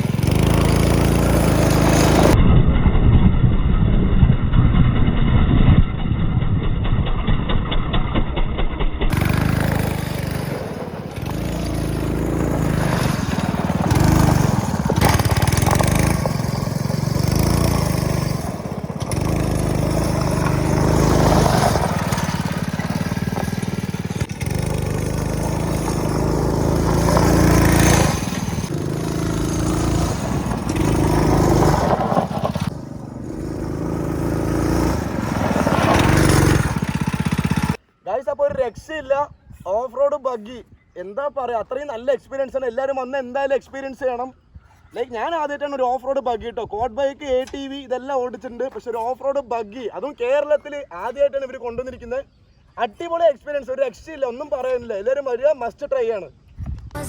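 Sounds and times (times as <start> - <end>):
single-cylinder engine revving: 0.0 - 2.5, 9.0 - 37.8.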